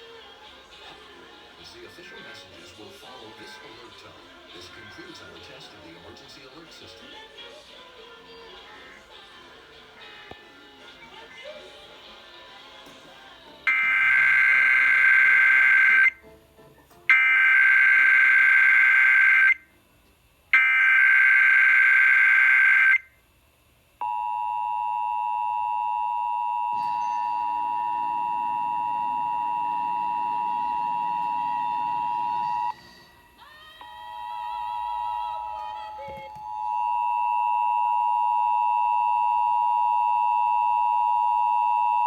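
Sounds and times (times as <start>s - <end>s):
two-tone attention signal: 13.7s - 16.2s, 24.0s - 32.8s.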